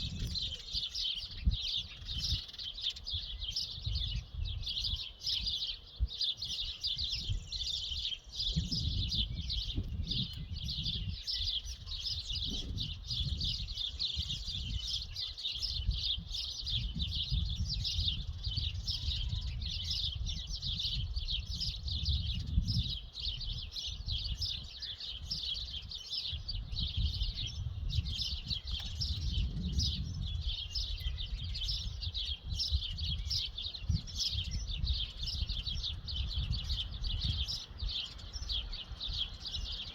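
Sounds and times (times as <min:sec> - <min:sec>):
many birds chirping: 0:00.0 - 0:39.9.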